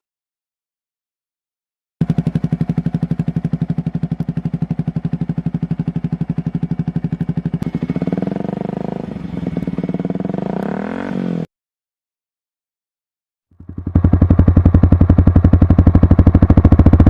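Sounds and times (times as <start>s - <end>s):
motorcycle engine idling and revving: 2.0s - 11.5s, 13.5s - 17.0s.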